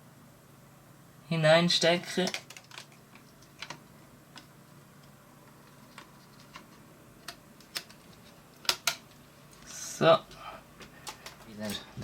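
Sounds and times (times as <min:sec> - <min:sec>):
small clicks and taps: 0:02.2 - 0:09.2.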